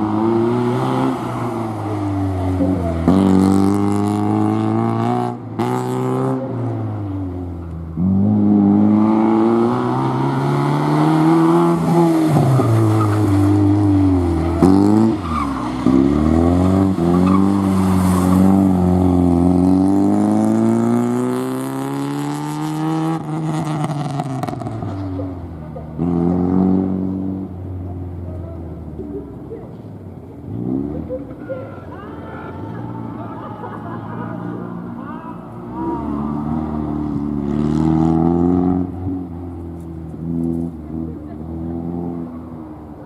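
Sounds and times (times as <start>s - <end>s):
car engine revving hard: 0.0s - 6.7s, 7.9s - 24.8s, 35.7s - 39.6s
tyres skidding and squealing: 0.0s - 43.0s.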